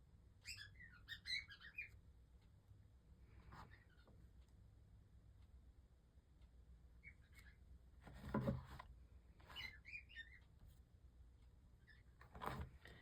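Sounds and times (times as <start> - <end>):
faint bird-like chirps: 0.4 - 2.0, 3.4 - 4.2, 6.9 - 7.8, 9.4 - 10.6, 11.8 - 12.2.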